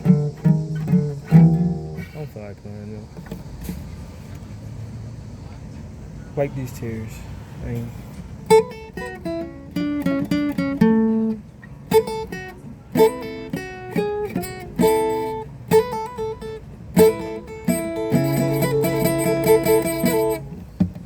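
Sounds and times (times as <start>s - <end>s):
guitar playing: 0.0s - 2.5s, 8.4s - 21.0s.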